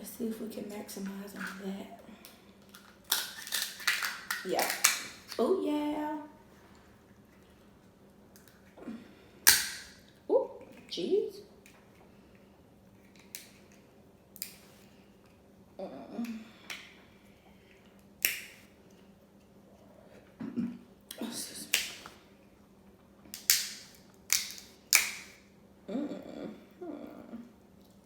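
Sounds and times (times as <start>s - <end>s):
crab shell cracking: 2.2s - 5.4s, 9.4s - 10.2s, 13.0s - 14.6s, 17.9s - 18.8s, 23.3s - 25.5s
person humming with enjoyment: 25.9s - 27.5s.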